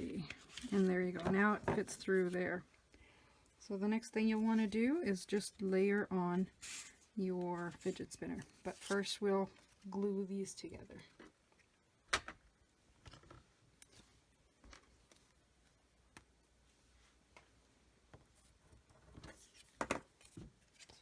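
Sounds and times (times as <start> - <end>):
paper and craft supplies tapping: 1.2 - 2.0.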